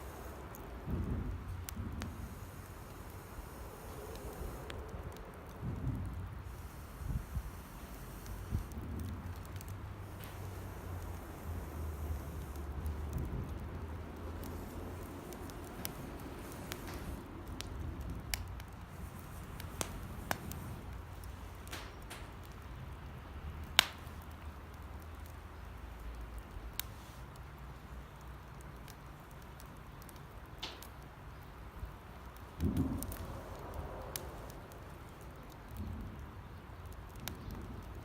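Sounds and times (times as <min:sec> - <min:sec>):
campfire crackling: 0:00.0 - 0:38.0
low steady rumble: 0:31.8 - 0:38.0.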